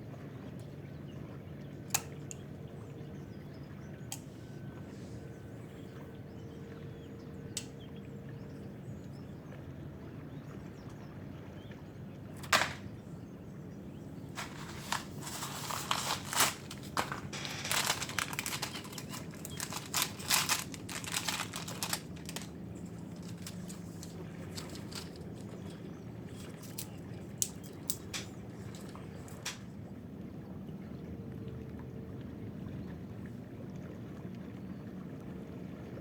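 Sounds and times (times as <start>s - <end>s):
crinkly clicks and scrapes: 12.4s - 12.9s, 14.2s - 29.7s.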